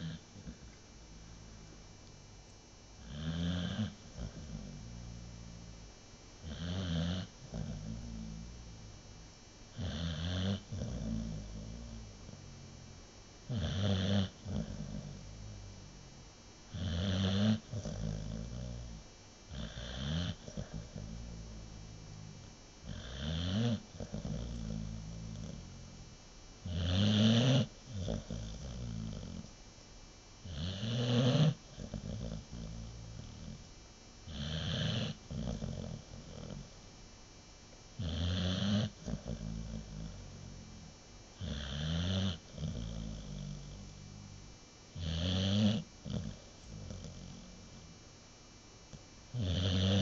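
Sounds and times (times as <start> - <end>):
dog snoring: 0.0 - 1.8, 3.0 - 29.5, 30.4 - 36.8, 38.0 - 48.0, 48.9 - 50.0.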